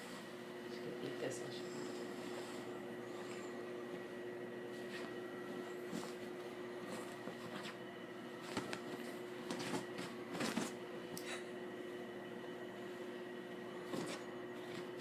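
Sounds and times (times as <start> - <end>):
steady indoor hum: 0.0 - 15.0.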